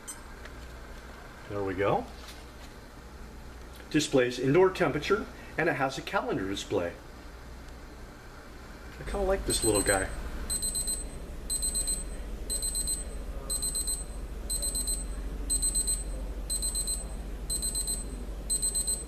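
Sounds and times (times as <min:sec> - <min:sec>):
alarm clock beeping: 0:09.6 - 0:19.0.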